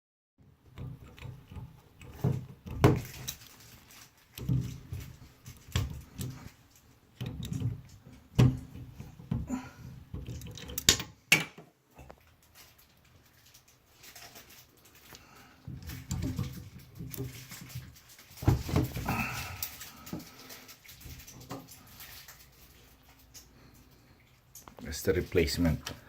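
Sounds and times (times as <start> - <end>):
tools knocking and clinking: 10.1 - 11.7.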